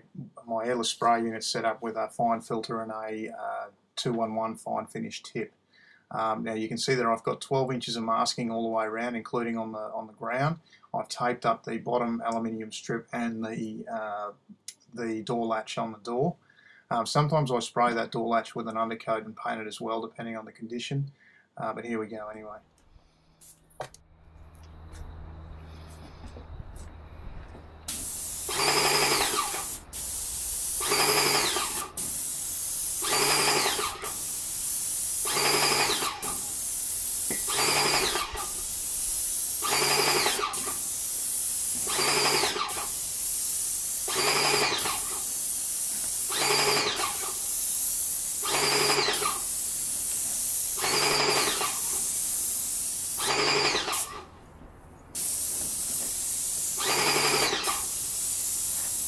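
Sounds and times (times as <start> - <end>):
paint sprayer hissing: 23.4 - 27.0, 27.8 - 54.4, 55.1 - 59.0
pump motor buzzing: 28.5 - 29.9, 30.8 - 32.0, 33.0 - 34.1, 35.3 - 36.3, 37.5 - 38.4, 39.6 - 40.7, 41.8 - 42.9, 44.1 - 45.2, 46.3 - 47.3, 48.4 - 49.4, 50.8 - 51.8, 53.2 - 54.3, 56.8 - 57.8.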